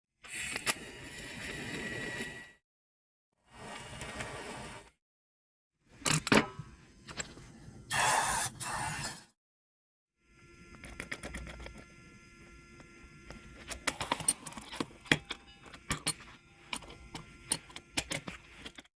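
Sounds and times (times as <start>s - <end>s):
padlock clicking and rattling: 13.6s - 18.8s.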